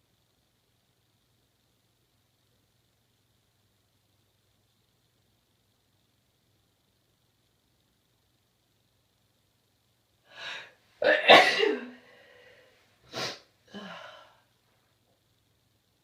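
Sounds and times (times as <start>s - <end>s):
person breathing in: 10.3s - 10.7s, 12.0s - 14.4s
soft breath: 10.3s - 10.8s, 12.0s - 14.6s
person sneezing: 10.4s - 12.4s, 13.1s - 14.2s.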